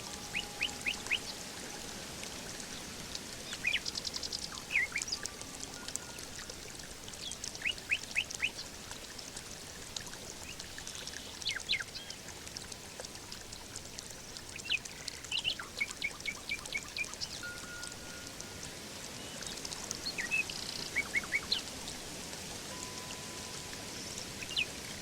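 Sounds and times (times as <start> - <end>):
birds chirping: 0.0 - 1.9
running water trickling: 0.0 - 25.0.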